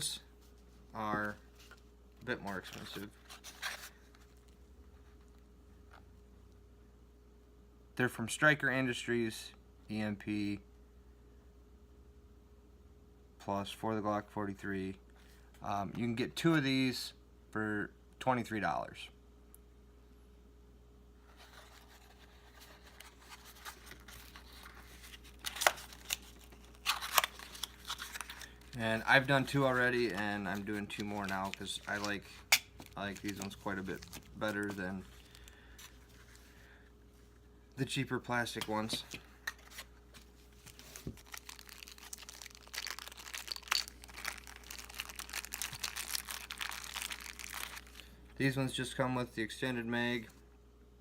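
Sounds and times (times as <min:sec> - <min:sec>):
rustling and crinkling: 0:00.4 - 0:05.4, 0:21.2 - 0:37.4, 0:38.7 - 0:48.0.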